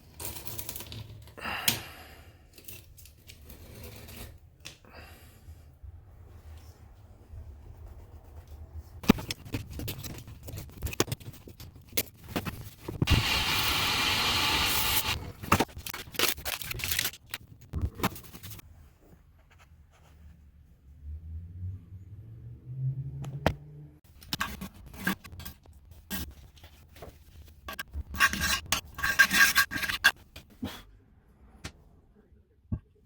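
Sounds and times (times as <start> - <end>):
clicks knocks and scrapes: 9.0 - 13.1, 24.1 - 30.6.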